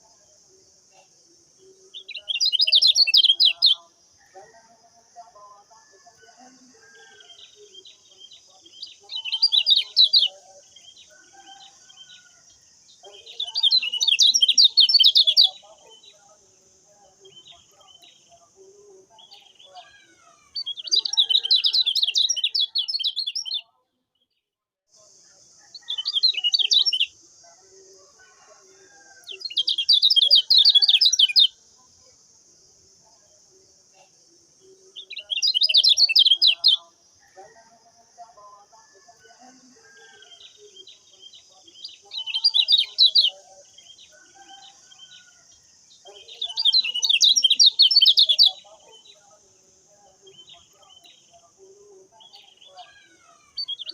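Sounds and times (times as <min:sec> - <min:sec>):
songbird high chattering: 0:01.9 - 0:03.8, 0:13.1 - 0:16.1, 0:25.8 - 0:27.1, 0:29.3 - 0:31.5, 0:35.0 - 0:36.9, 0:46.2 - 0:49.0.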